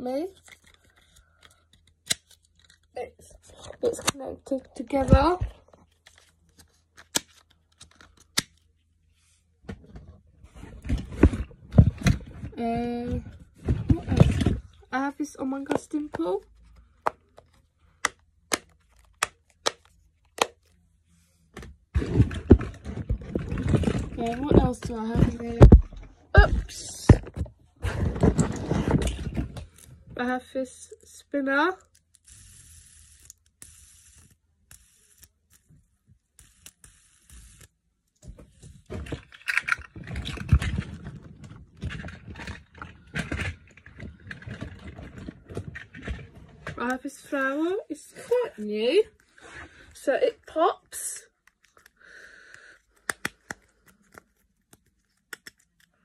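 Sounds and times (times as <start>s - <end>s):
rustling handling noise: 0.3s - 30.4s, 38.2s - 51.9s.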